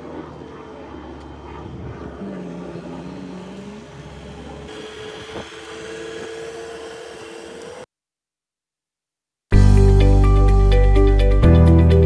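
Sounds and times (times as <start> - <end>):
noisy hum: 0.0 - 6.3
machine whine: 0.0 - 7.9.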